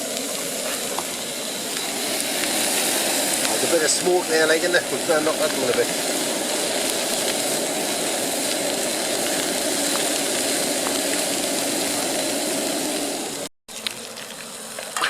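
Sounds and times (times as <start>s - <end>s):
stove burner rushing: 0.0s - 13.5s
burgers sizzling: 0.0s - 15.0s.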